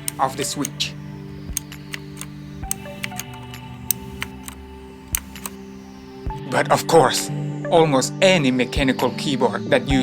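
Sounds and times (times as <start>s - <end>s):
mechanical keyboard key clicks: 0.0s - 6.4s
background music: 0.0s - 10.0s.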